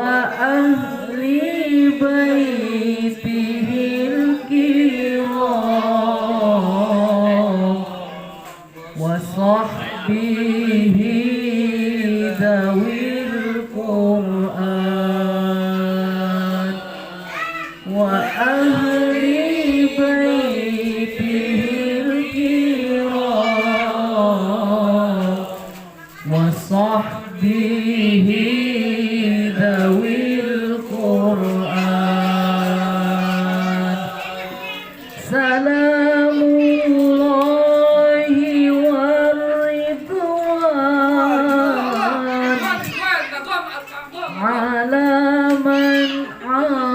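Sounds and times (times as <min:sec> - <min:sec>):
man singing devotional song: 0:00.0 - 0:46.9.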